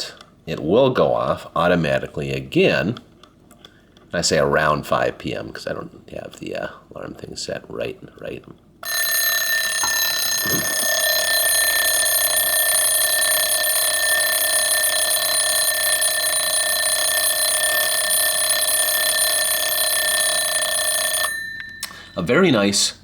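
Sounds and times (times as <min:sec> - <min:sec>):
alarm clock bell ringing: 0:08.8 - 0:22.7.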